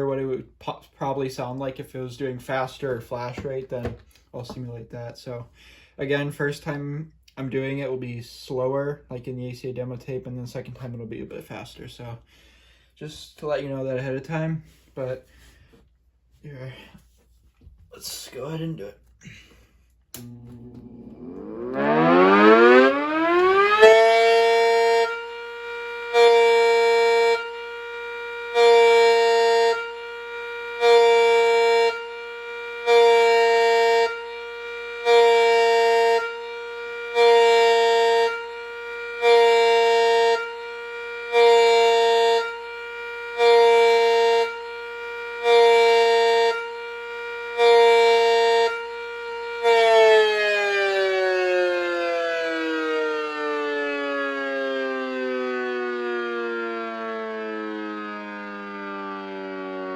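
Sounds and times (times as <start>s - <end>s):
model siren whining: 20.2s - 59.9s.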